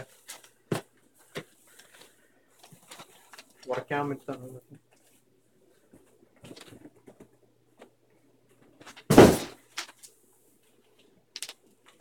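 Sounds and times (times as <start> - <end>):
loud thump: 9.1 - 9.6.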